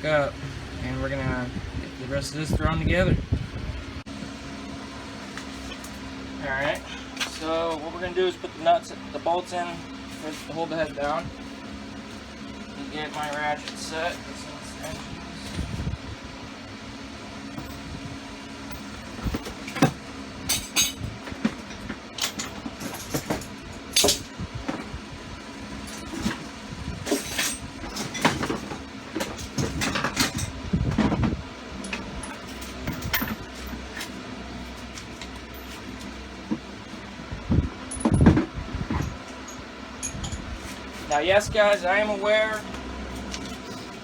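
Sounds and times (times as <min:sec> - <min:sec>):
metal tools clinking: 0:13.1 - 0:15.6, 0:20.5 - 0:24.3, 0:27.0 - 0:30.6, 0:31.8 - 0:34.2, 0:37.8 - 0:42.7.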